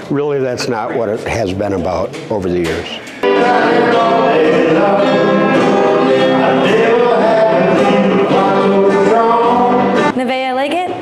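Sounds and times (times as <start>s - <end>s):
country music with group singing: 3.2s - 10.2s.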